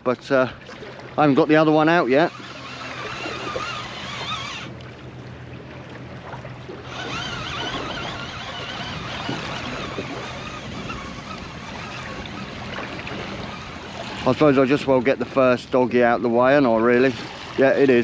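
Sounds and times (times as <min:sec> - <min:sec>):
low hum: 0:00.0 - 0:14.4
sea water lapping: 0:00.0 - 0:18.0
wind: 0:00.0 - 0:18.0.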